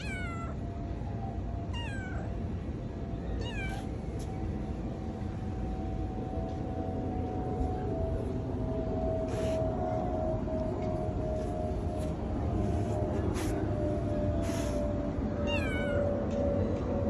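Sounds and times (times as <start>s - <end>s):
cat meowing: 0.0s - 0.6s, 1.7s - 2.3s, 3.4s - 3.9s, 15.4s - 16.1s
low background rumble: 0.0s - 17.0s.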